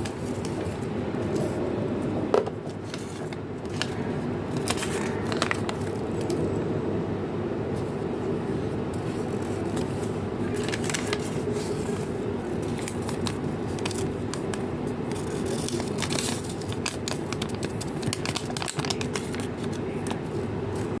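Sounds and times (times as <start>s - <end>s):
low background hum: 0.0s - 21.0s
plastic packaging crinkling and tearing: 2.6s - 6.5s, 9.0s - 20.9s.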